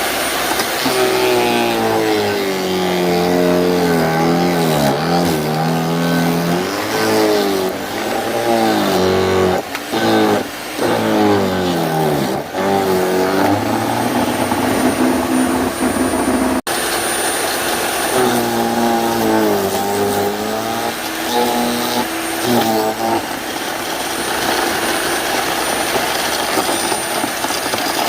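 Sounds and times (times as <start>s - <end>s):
wood chipper shredding sticks: 0.0s - 28.0s.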